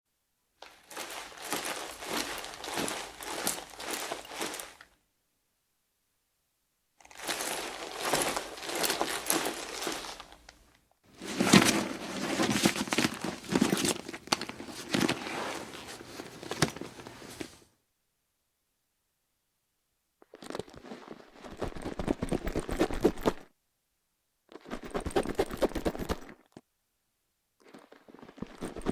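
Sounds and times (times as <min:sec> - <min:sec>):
handbag rustling and creaking: 0:00.6 - 0:05.0, 0:07.0 - 0:17.7
metal chain clinking: 0:00.9 - 0:04.8.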